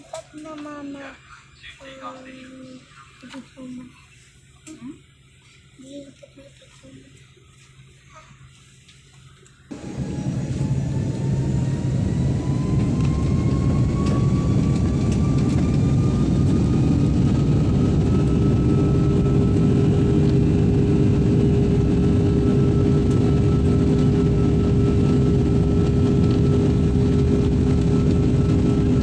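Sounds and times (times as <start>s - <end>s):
jet engine roar in cabin: 9.7s - 29.0s
jet engine whine rising: 9.7s - 29.0s.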